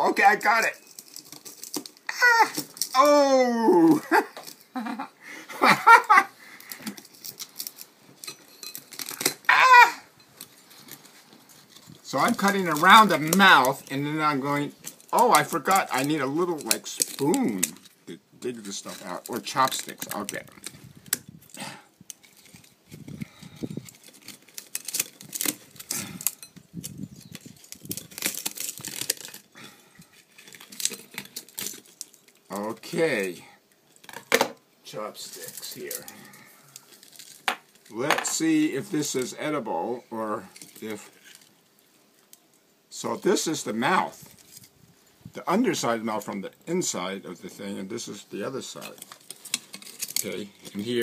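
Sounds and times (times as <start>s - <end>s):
rustling: 0.0s - 51.0s
person exclaiming: 2.1s - 6.3s, 9.5s - 10.1s
blade cutting shell crunches: 6.7s - 9.8s, 18.6s - 29.5s.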